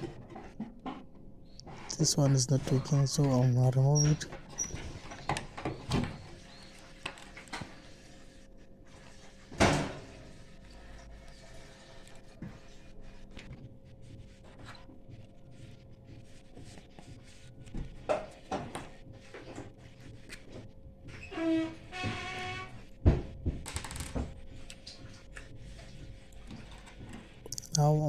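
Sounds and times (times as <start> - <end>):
hands and tools clicking and scraping: 23.6 - 28.0.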